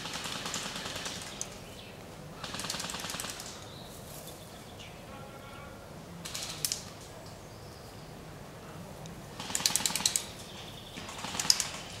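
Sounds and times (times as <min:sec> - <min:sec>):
airsoft guns firing rapid clicks: 0:00.0 - 0:01.6, 0:02.4 - 0:03.6, 0:06.2 - 0:06.8, 0:09.4 - 0:10.3, 0:11.0 - 0:12.0.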